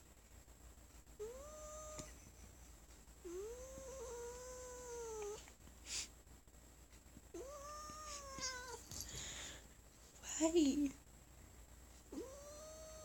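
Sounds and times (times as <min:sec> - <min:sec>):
cat growling: 0:01.2 - 0:02.1, 0:03.3 - 0:05.4, 0:07.4 - 0:08.8, 0:12.1 - 0:13.0.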